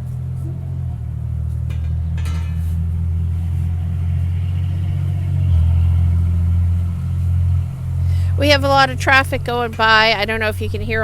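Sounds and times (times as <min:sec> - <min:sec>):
road traffic rumble: 0:00.0 - 0:11.0
vehicle passing: 0:00.0 - 0:11.0
light clinks: 0:01.6 - 0:03.1.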